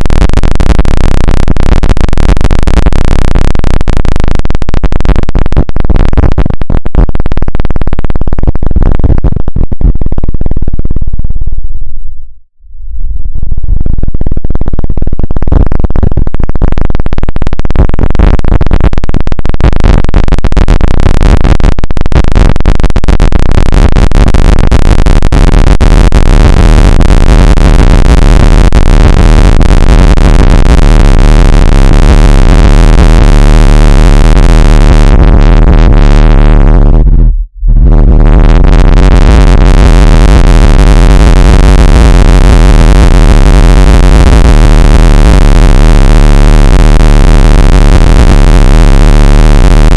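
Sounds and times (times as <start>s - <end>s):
harsh electronic buzz: 0.0s - 10.7s, 14.7s - 49.9s
low drone: 27.3s - 49.0s.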